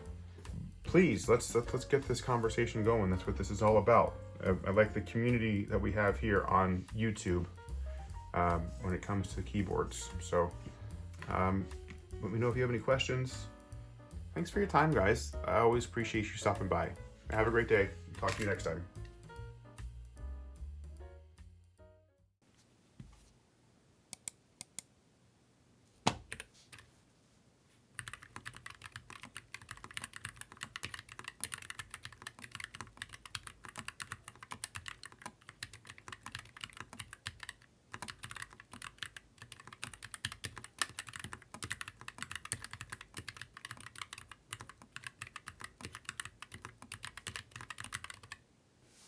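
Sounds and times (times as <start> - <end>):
mechanical keyboard typing: 28.0 - 48.4.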